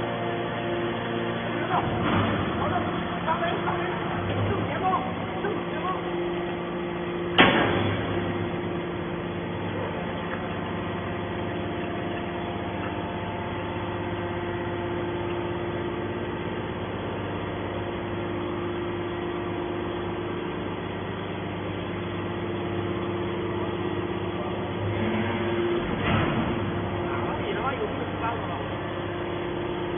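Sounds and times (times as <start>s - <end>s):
hydraulic power unit hum: 0.0s - 29.9s
loud bang of baler: 7.4s - 8.3s.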